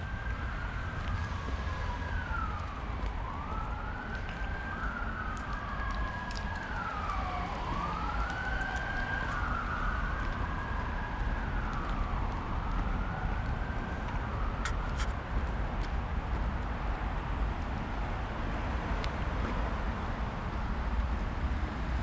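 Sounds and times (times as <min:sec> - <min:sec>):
siren wailing: 0:00.0 - 0:14.9.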